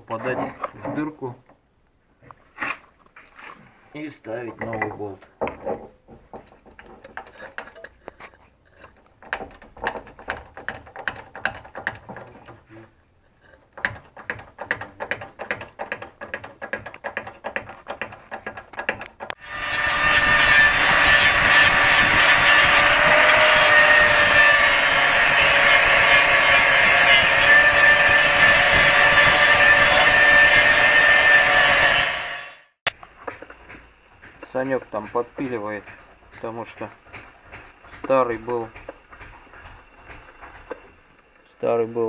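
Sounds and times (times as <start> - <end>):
rapid irregular clicking: 4.6 - 12.8, 13.5 - 19.4
angle grinder grinding: 19.3 - 32.9.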